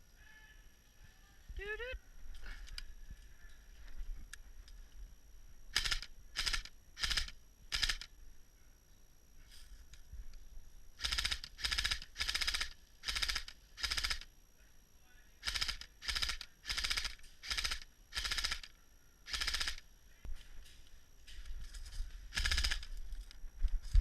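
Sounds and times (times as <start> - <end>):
crunching footsteps: 2.2 - 5.5, 20.2 - 24.0.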